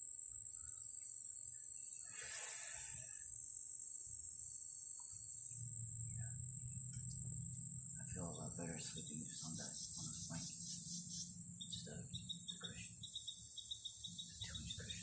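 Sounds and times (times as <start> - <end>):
crickets trilling: 0.0 - 15.0
low hum: 4.2 - 15.0.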